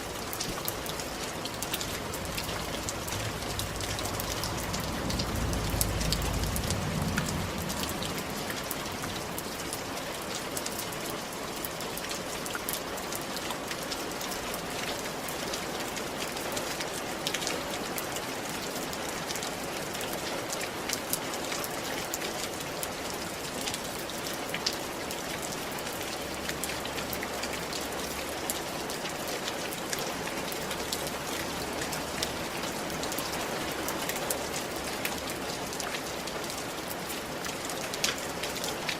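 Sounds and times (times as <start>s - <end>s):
steady rain: 0.0s - 38.9s
low rumble: 2.2s - 9.5s.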